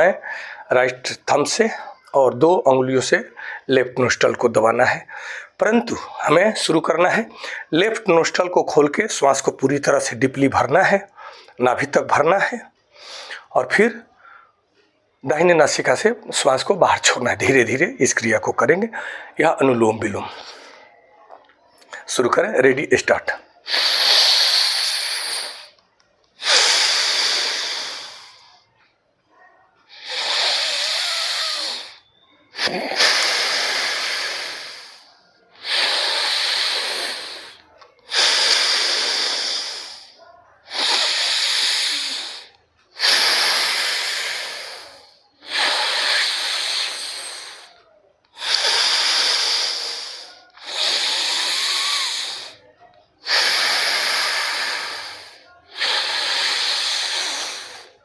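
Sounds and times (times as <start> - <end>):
person breathing through nostril: 0.0 - 0.7, 3.3 - 3.7, 5.1 - 6.2, 7.3 - 7.7, 11.1 - 11.6, 12.9 - 13.5, 19.0 - 19.4, 23.5 - 25.8, 26.4 - 28.6, 29.9 - 58.0.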